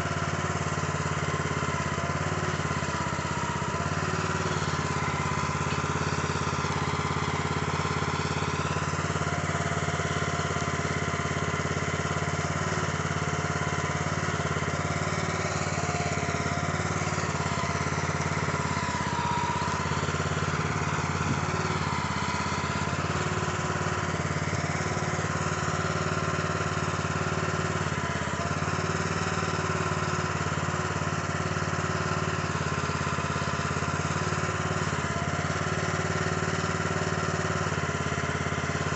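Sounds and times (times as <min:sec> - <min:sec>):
small gasoline engine running: 0:00.0 - 0:38.9
hydraulic whine wavering: 0:01.4 - 0:29.0.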